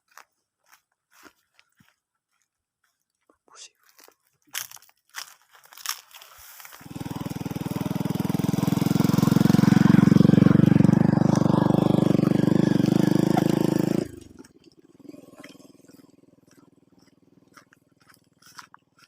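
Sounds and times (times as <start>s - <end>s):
small engine running: 6.8s - 19.0s.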